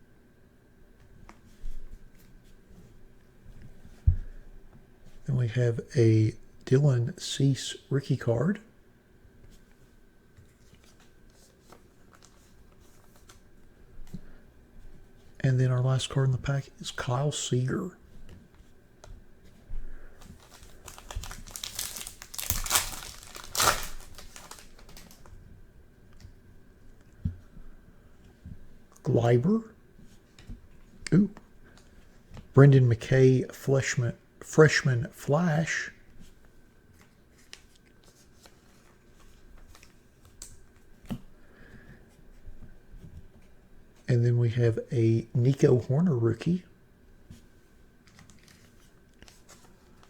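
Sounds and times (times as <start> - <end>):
trading cards clicking and rustling: 20.2 - 25.3
wrapper crinkling and tearing: 20.2 - 25.3.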